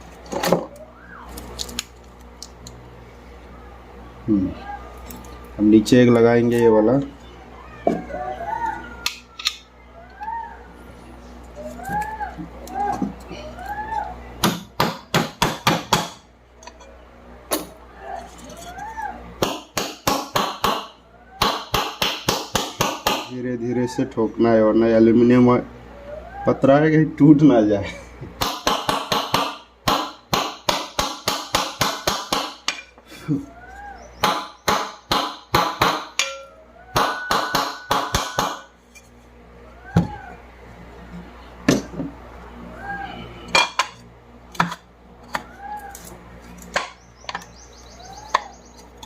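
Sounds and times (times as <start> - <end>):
hammer tapping on metal: 34.2 - 38.6.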